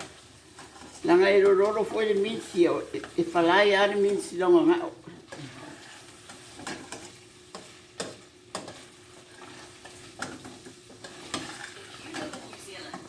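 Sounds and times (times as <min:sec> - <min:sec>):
utensil scraping a pan: 0:00.0 - 0:04.4, 0:05.3 - 0:13.0
meat sizzling in a pan: 0:00.0 - 0:13.0.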